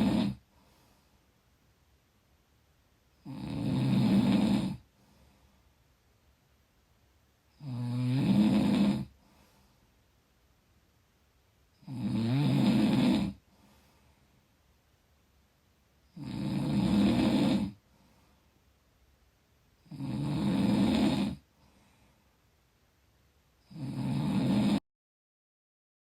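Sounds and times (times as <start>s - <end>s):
person snoring: 0.0s - 0.4s, 3.2s - 4.9s, 7.6s - 9.2s, 11.8s - 13.4s, 16.1s - 17.8s, 19.8s - 21.5s, 23.6s - 24.8s
quiet breathing: 0.0s - 1.7s, 3.0s - 10.7s, 11.7s - 15.0s, 15.8s - 19.1s, 19.7s - 22.8s.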